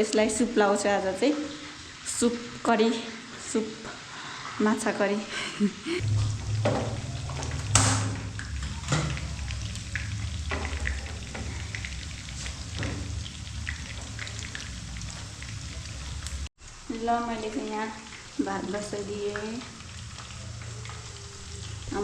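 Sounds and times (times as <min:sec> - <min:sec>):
steady low hum: 0:05.9 - 0:16.5
fish frying in hot oil: 0:06.0 - 0:22.0.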